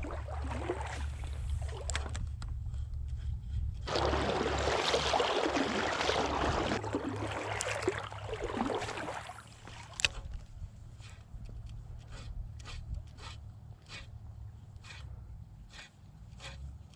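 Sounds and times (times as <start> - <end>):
creek water rushing and splashing: 0.0 - 2.0, 3.9 - 10.2.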